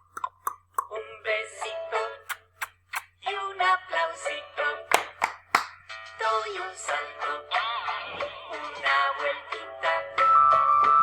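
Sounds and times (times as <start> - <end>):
person singing: 6.2 - 11.0.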